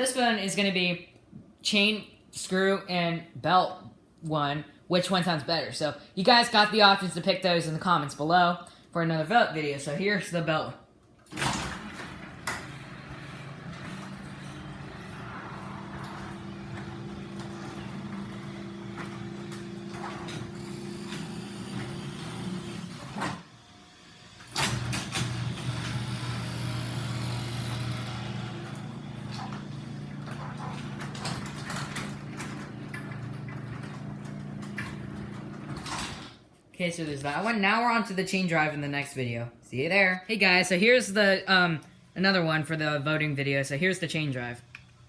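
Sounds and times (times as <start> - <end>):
garage door opener motor hum: 11.3 - 36.5.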